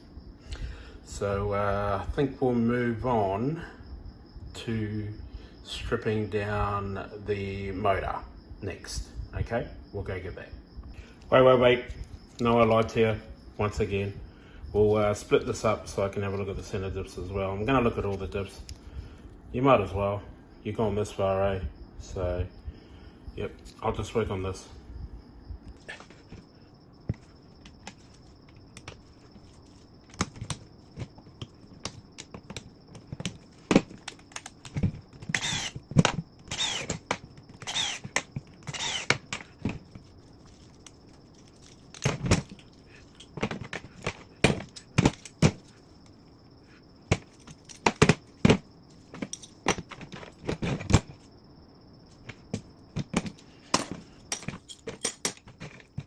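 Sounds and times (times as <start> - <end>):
faint high whine: 0.0 - 56.0
metal parts clicking and jangling: 27.6 - 35.5, 36.8 - 46.0, 47.2 - 51.3, 52.1 - 56.0.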